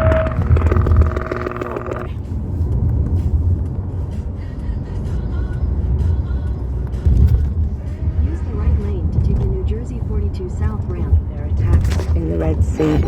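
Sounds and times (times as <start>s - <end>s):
pulsing electronic alert tone: 0.0s - 2.2s
car road noise rumble: 0.0s - 13.0s.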